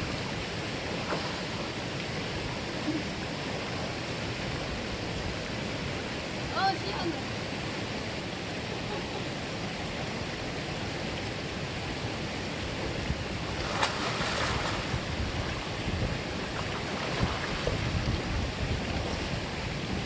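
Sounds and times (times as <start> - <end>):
stream rushing over rocks: 0.0 - 20.0
wind rumbling on microphone: 9.7 - 20.0.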